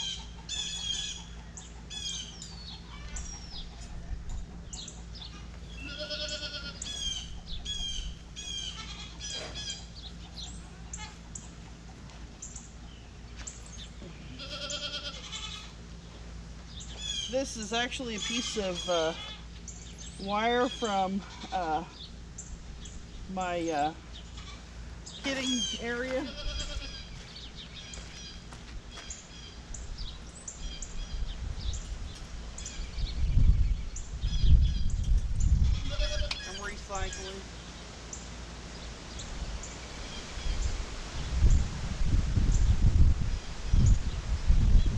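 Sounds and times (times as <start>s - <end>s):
small birds chirping: 0.0s - 41.6s
goat bleating: 5.2s - 6.9s, 8.5s - 9.5s, 14.3s - 15.8s, 18.2s - 19.4s, 21.2s - 21.9s, 25.3s - 27.1s, 35.6s - 36.6s
wind rumbling on microphone: 29.7s - 37.4s, 39.1s - 44.9s.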